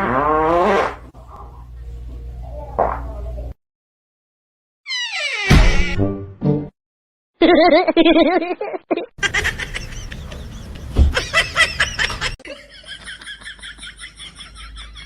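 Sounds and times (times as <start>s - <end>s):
people laughing: 7.5s - 15.0s.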